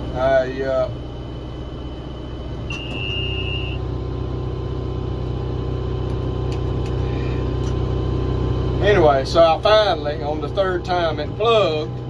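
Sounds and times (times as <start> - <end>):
tractor engine running: 0.0 - 12.0
electronic beep: 2.7 - 3.8.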